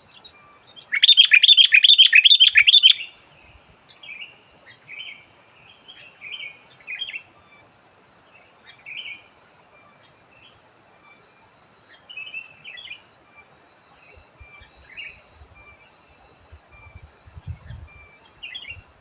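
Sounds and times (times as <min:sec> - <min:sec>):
bulbul singing: 0:00.1 - 0:03.2.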